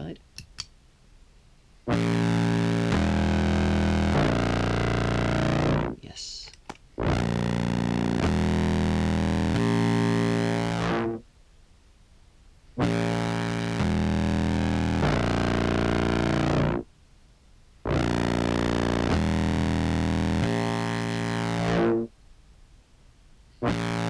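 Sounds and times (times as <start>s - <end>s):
low filtered clarinet notes: 1.9s - 6.0s, 7.0s - 11.2s, 12.8s - 16.8s, 17.9s - 22.1s, 23.6s - 24.0s.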